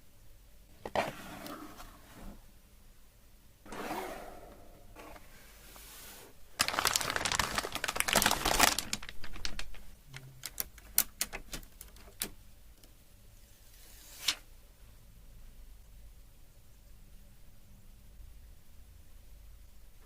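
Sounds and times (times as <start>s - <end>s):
unboxing crackling and clicking: 6.6s - 12.4s.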